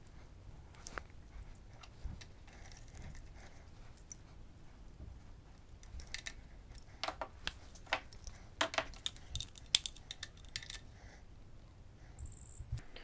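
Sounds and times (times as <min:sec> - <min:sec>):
small metal tools clinking: 0:07.7 - 0:10.9.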